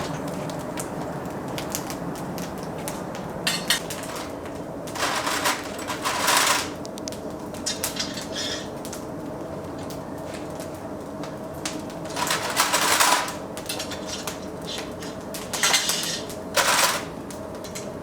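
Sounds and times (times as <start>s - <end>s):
steady background hum: 0.0s - 18.0s
utensils and dishes clattering: 3.5s - 6.8s, 7.5s - 9.0s, 12.0s - 18.0s.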